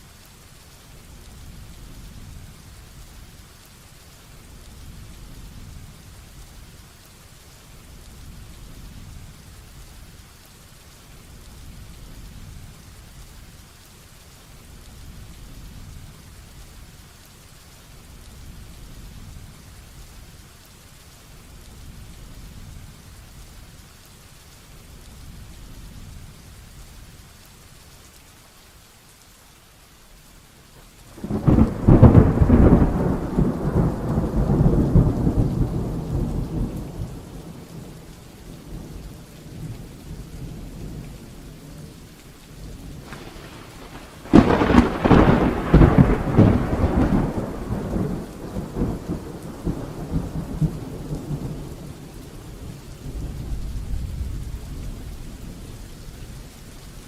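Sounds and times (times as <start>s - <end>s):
heavy rain: 0.0s - 57.0s
thunder claps: 31.1s - 41.2s, 43.0s - 54.7s.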